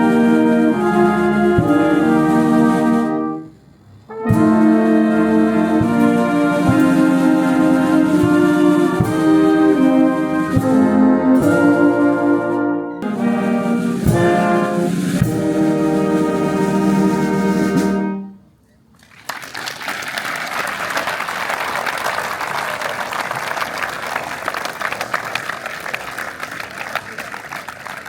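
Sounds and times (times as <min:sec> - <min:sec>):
brass band playing: 0:00.0 - 0:18.5
percussion strikes: 0:04.1 - 0:12.1, 0:12.9 - 0:18.1
audience applause: 0:19.0 - 0:28.0.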